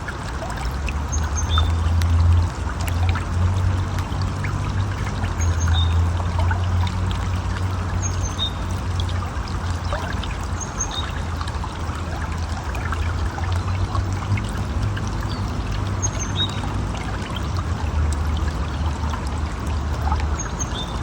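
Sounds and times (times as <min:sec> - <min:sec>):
river water flowing and splashing: 0:00.0 - 0:21.0.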